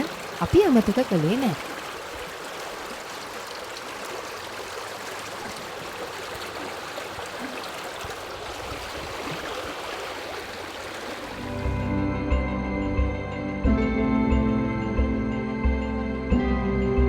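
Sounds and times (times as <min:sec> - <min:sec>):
stream flowing over rocks: 0:00.0 - 0:11.7.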